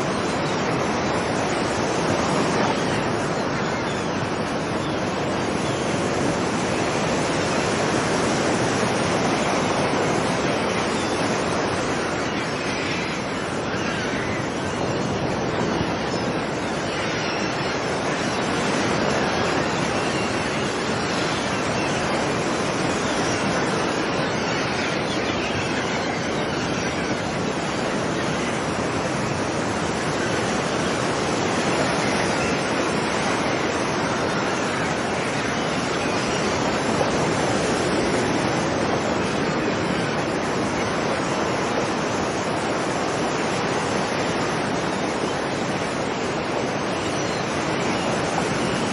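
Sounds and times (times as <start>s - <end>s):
waves breaking on a beach: 0.0s - 48.9s.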